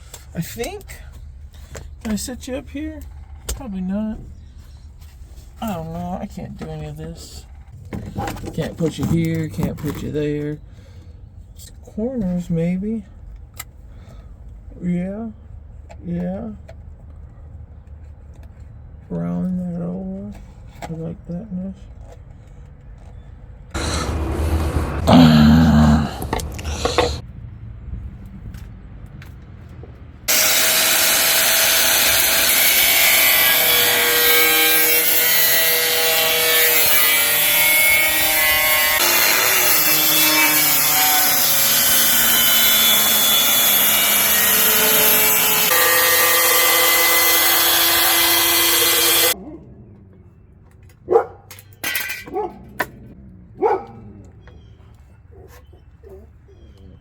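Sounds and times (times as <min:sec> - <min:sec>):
electric power tool cutting: 0:23.8 - 0:27.2, 0:30.3 - 0:49.4.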